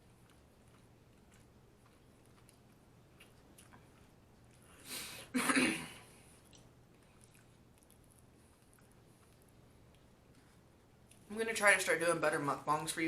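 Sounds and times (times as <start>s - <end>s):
person chewing: 0.0s - 5.2s, 6.0s - 11.3s.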